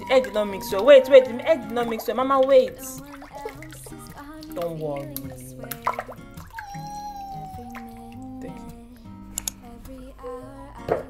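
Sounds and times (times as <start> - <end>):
background music with held notes: 0.0 - 11.0
sharp click: 9.3 - 9.6.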